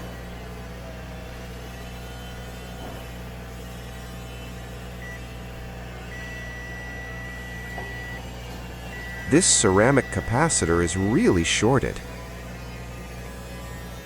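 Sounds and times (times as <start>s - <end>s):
steady low hum: 5.8s - 14.0s
multimeter beeping: 6.1s - 8.2s, 8.9s - 11.9s.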